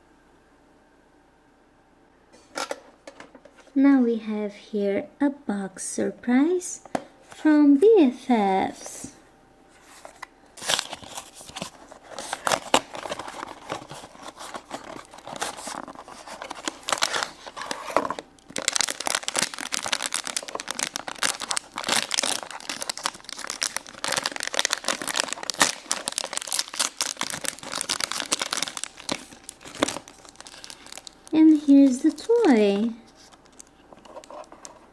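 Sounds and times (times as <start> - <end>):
wrapping crinkling and ripping: 9.9 - 34.9.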